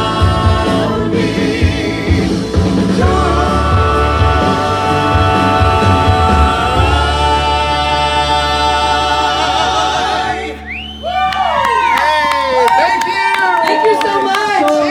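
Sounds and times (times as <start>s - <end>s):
group of voices singing: 0.0s - 11.0s
steady low bass: 0.0s - 12.8s.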